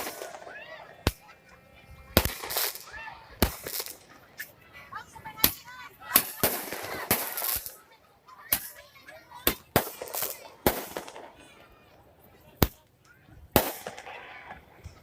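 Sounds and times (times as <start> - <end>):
fireworks bangs: 0.0 - 1.3, 2.1 - 4.2, 5.3 - 7.9, 9.4 - 11.4, 13.5 - 14.6
fireworks crackling: 0.0 - 1.5, 2.1 - 11.7, 12.6 - 15.0.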